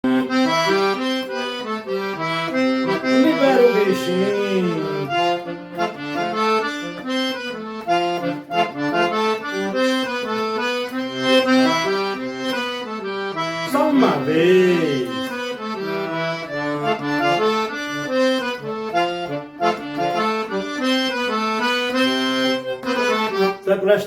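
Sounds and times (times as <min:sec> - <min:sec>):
accordion lively melody: 0:00.0 - 0:24.0
person calling out: 0:03.1 - 0:05.2, 0:13.7 - 0:15.3.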